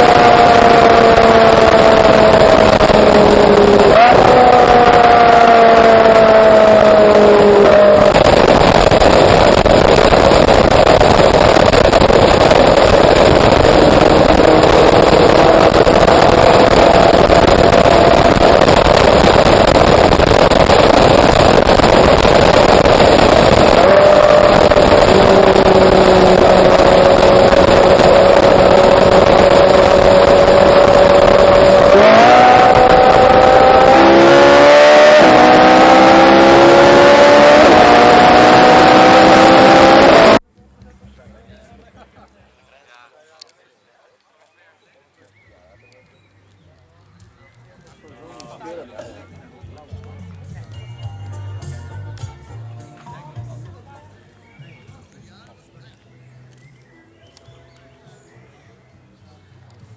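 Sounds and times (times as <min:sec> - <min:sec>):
loud rushing noise: 0:00.0 - 0:40.4
sports car engine at speed: 0:00.0 - 0:42.5.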